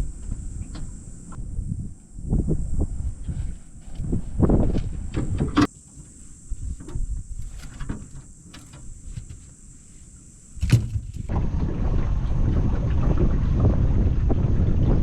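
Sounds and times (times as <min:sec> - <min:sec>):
wind on the microphone: 0:00.0 - 0:05.7, 0:06.4 - 0:09.4, 0:10.6 - 0:15.0
boat engine rumble: 0:00.0 - 0:15.0
knocks and clunks in a boat: 0:04.0 - 0:09.6, 0:10.6 - 0:15.0.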